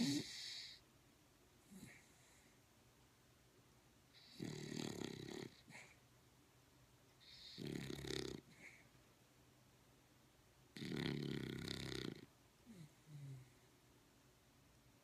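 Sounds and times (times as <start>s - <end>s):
dog snoring: 0.0s - 0.8s, 4.2s - 6.0s, 7.2s - 8.8s, 10.8s - 13.6s.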